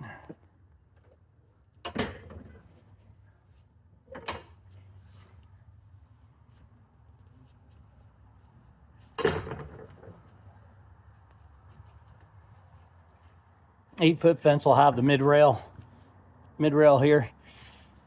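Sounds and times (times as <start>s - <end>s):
fence gate banging against latch: 1.8s - 2.5s, 9.2s - 10.0s.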